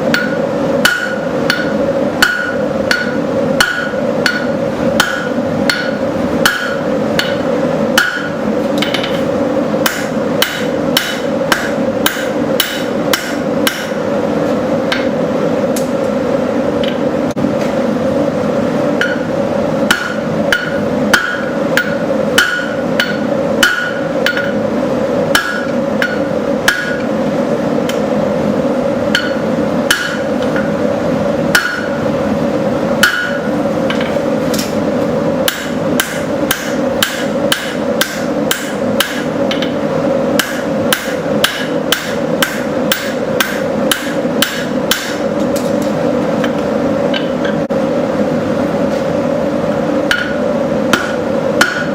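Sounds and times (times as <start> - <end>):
hammer striking steel on anvil: 0.1 - 14.0, 14.9 - 15.2, 19.0 - 24.6, 25.3 - 27.1, 29.1 - 30.7, 31.5 - 32.0, 33.0 - 34.8, 35.4 - 39.8, 40.4 - 45.8, 50.1 - 51.9.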